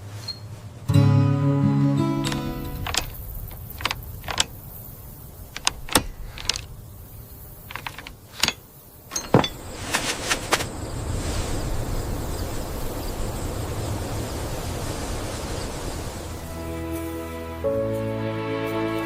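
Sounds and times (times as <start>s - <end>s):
sharp clicks and light knocks: 2.2s - 4.6s, 5.5s - 6.7s, 7.7s - 10.6s.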